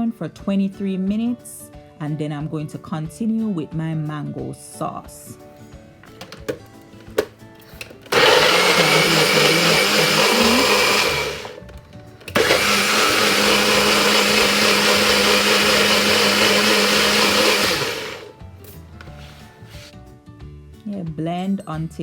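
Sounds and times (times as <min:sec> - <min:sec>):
blender running: 0:08.0 - 0:18.4.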